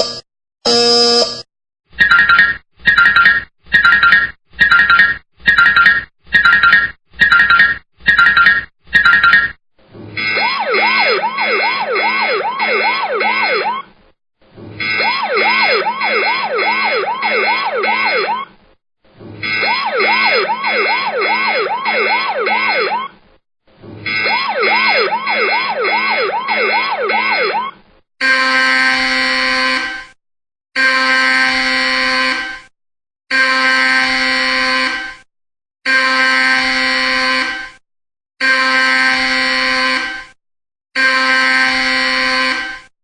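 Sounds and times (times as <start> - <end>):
harsh steady buzzer: 0.0 - 1.5, 19.4 - 22.9, 28.2 - 30.1, 30.8 - 32.7, 33.3 - 35.3, 35.9 - 37.8, 38.4 - 40.4, 41.0 - 42.9
yelping electronic siren: 10.2 - 14.0, 14.8 - 18.6, 19.4 - 23.2, 24.1 - 29.9.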